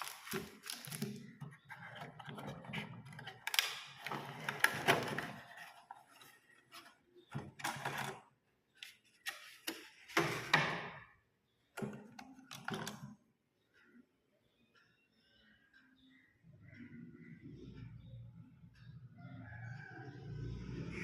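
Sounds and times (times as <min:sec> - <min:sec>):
plastic packaging clicks and rustles: 0:00.0 - 0:06.4.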